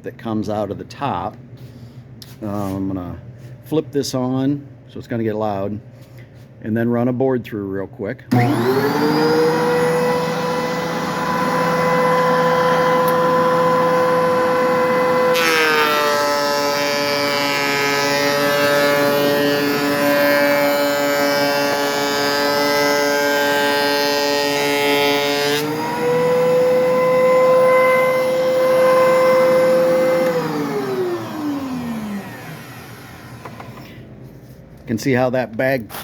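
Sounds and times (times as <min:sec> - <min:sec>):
planer cutting hiss: 0:08.3 - 0:33.9
thickness planer whining: 0:08.3 - 0:33.9.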